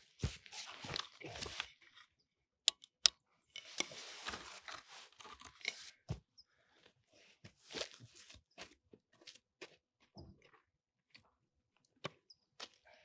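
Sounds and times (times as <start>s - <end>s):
sharp clicks of rifle bipod: 1.0s - 1.7s, 2.7s - 3.1s.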